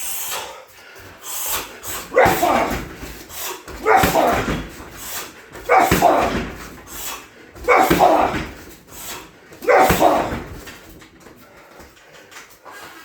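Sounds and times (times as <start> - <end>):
strikes on heavy bag: 1.9 - 11.4.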